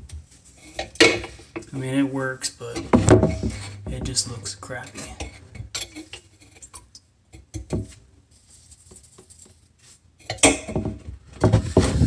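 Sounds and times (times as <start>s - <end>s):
plumbing parts rattling and rustling: 2.6s - 6.8s, 10.7s - 12.0s.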